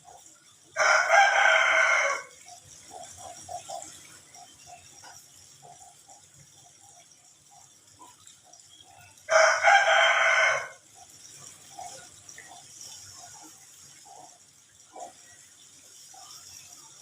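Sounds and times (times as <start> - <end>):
rooster crowing: 0.8 - 2.4, 9.3 - 10.8.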